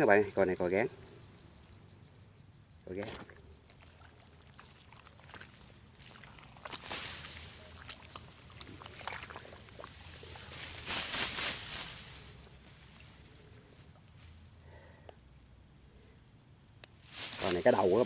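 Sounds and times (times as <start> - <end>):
rustling and scuffling: 6.2 - 14.5, 17.0 - 18.0.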